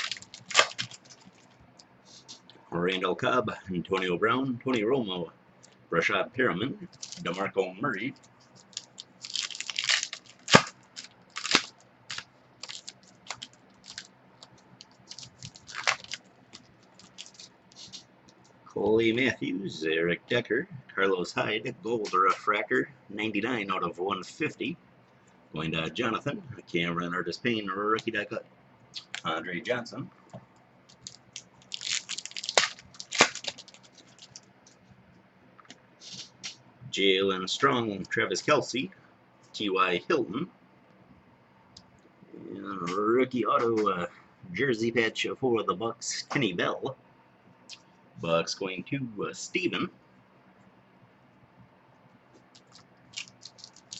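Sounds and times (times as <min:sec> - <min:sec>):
cards clicking and rustling: 0:00.0 - 0:01.5, 0:08.2 - 0:18.5, 0:30.9 - 0:34.4, 0:52.5 - 0:53.9.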